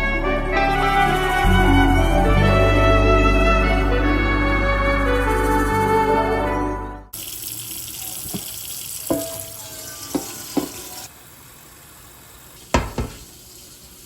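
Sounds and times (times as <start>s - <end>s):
tap water running: 7.1s - 14.0s
pots and utensils clinking: 8.1s - 11.1s, 12.6s - 13.4s.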